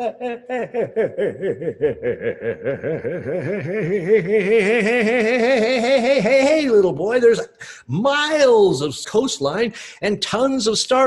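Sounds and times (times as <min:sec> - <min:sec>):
man laughing: 0:00.0 - 0:06.8.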